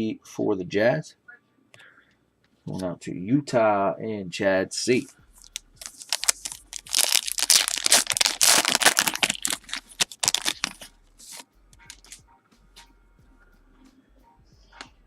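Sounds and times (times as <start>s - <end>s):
card pack wrapper crinkling and tearing: 5.4s - 12.2s.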